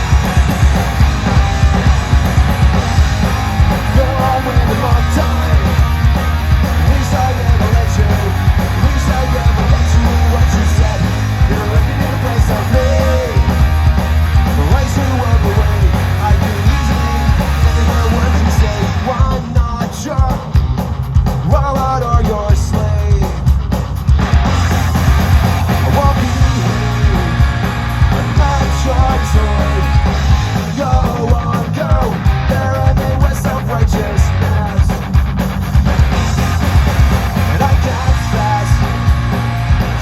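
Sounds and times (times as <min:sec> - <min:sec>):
bass: 0:00.0 - 0:40.0
distorted electric guitars: 0:00.0 - 0:40.0
drums: 0:00.0 - 0:40.0
person singing lead vocal: 0:03.1 - 0:20.6, 0:21.4 - 0:23.5, 0:25.7 - 0:27.6, 0:28.2 - 0:35.1, 0:37.4 - 0:39.0.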